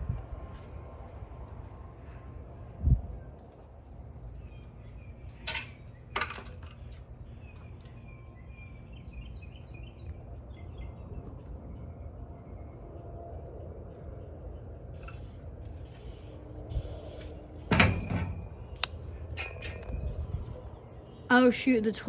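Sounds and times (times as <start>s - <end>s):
birds chirping: 6.8s - 22.0s.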